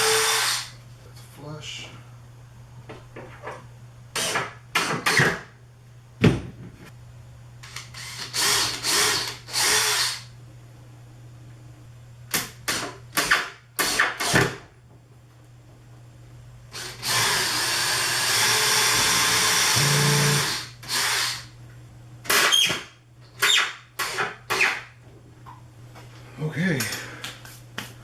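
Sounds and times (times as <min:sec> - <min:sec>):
power drill: 0:00.0 - 0:00.8, 0:07.6 - 0:10.3, 0:12.7 - 0:14.6, 0:16.7 - 0:21.5, 0:22.3 - 0:22.8, 0:23.4 - 0:24.8.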